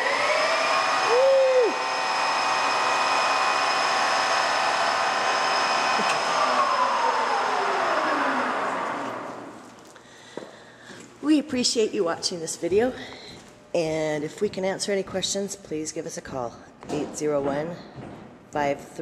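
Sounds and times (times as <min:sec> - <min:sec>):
lathe spindle whining: 0:00.0 - 0:09.8.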